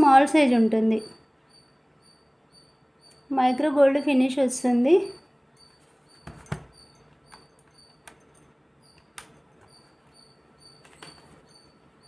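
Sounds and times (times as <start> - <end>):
faint high-pitched chirps: 0.0 - 12.0.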